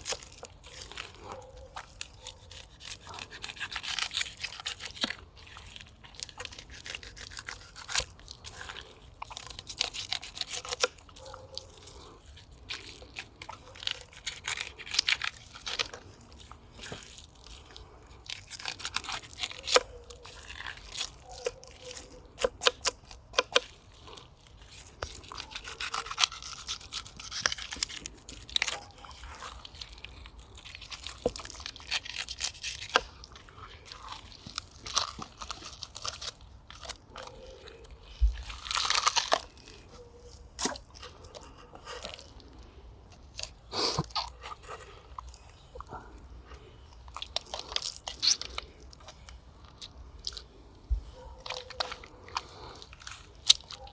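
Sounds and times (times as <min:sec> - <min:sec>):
knife scraping: 0:00.0 - 0:30.0.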